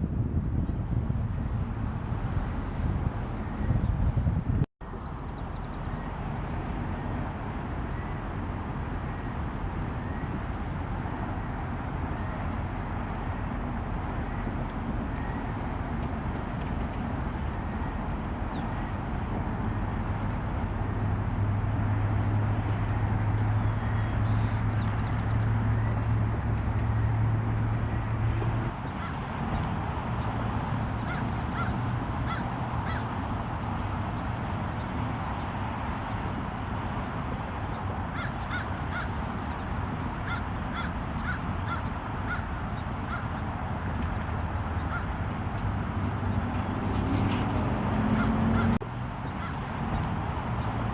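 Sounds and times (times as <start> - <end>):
low engine hum: 0.0 - 50.9
faint high bird chirps: 4.9 - 6.1.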